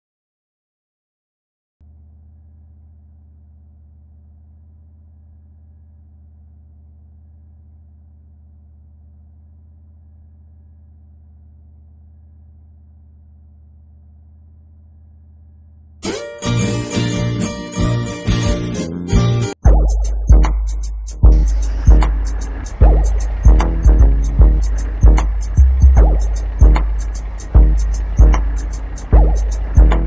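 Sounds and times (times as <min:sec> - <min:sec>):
vehicle engine idling: 0:01.9 - 0:12.6, 0:20.0 - 0:30.0
loud music from car stereo: 0:19.2 - 0:30.0.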